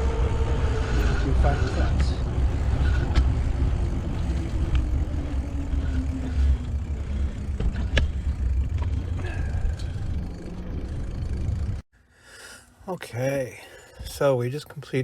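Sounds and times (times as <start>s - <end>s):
steady low rumble: 0.0s - 11.9s.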